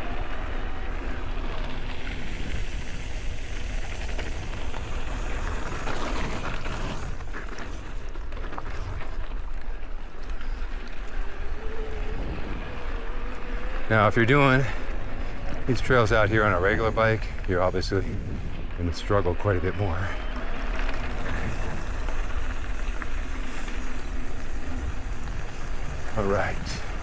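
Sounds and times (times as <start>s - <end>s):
bike tyres rolling on dirt: 0.0s - 27.0s
wind on microphone: 15.4s - 19.0s, 21.0s - 27.0s
bike clattering: 20.0s - 27.0s.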